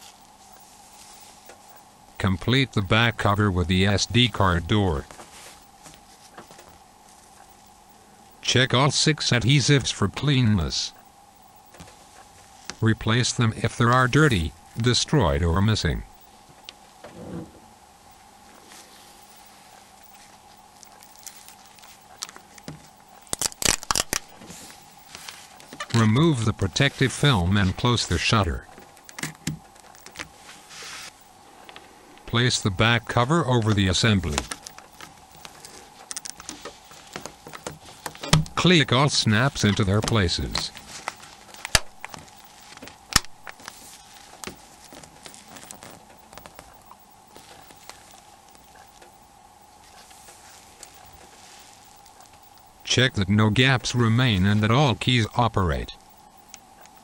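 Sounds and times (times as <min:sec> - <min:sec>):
faint steady hum: 0:00.0 - 0:57.0
handling noise: 0:09.7 - 0:57.0
plastic film crackling: 0:20.1 - 0:26.0, 0:33.7 - 0:38.3, 0:39.4 - 0:49.1.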